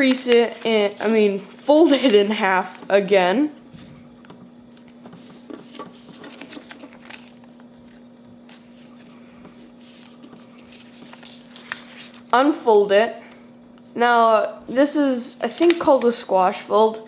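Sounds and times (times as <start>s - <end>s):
paper crinkling and rustling: 0.0s - 2.9s, 4.7s - 12.4s.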